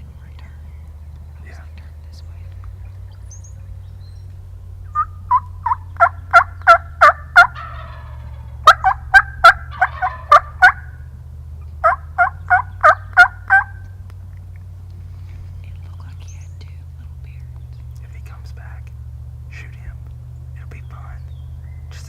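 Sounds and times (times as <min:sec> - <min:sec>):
wild turkey yelping: 0:02.7 - 0:16.3.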